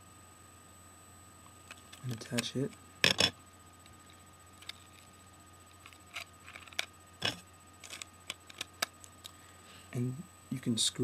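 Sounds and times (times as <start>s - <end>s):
small plastic parts clicking: 4.6s - 5.1s, 5.7s - 9.4s.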